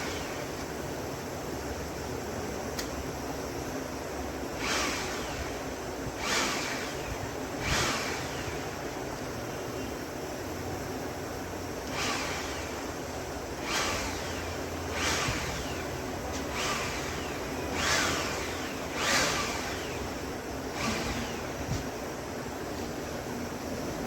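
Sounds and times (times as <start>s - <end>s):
air blower running: 0.0s - 1.2s, 4.4s - 9.2s, 11.8s - 22.8s.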